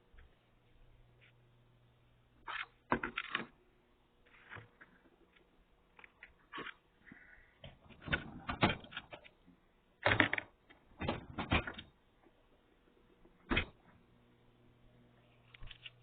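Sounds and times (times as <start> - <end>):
microwave oven humming: 7.2 - 16.0.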